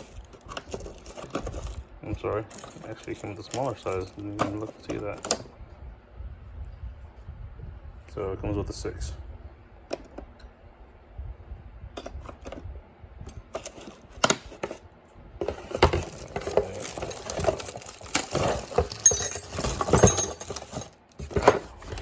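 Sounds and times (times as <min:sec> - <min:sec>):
steel wrenches clattering: 0:02.4 - 0:05.4, 0:15.9 - 0:22.0.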